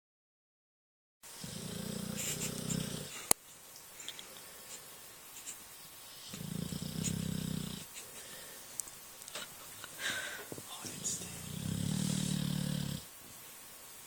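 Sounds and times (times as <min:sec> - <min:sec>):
quiet breathing: 0:01.3 - 0:08.8, 0:09.8 - 0:13.1
dog snoring: 0:01.4 - 0:03.3, 0:06.1 - 0:07.9, 0:10.8 - 0:13.1.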